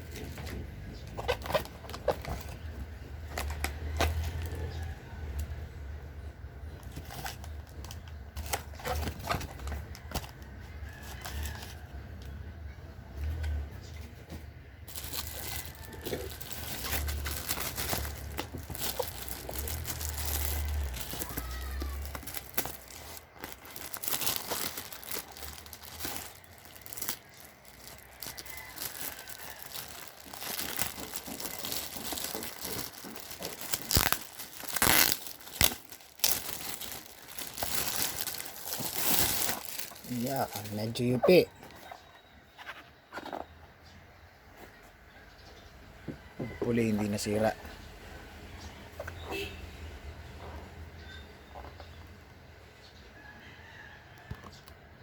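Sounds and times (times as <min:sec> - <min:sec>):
packaging crinkling and tearing: 0:00.0 - 0:05.6, 0:06.6 - 0:11.8, 0:14.9 - 0:41.2.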